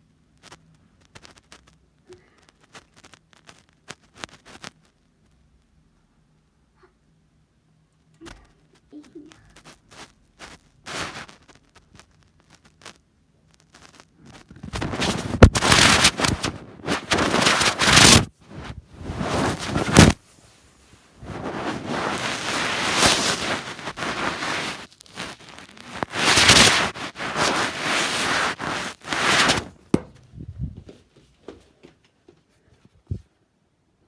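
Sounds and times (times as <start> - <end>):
loud rustling and scraping: 9.8 - 11.4, 14.4 - 29.9.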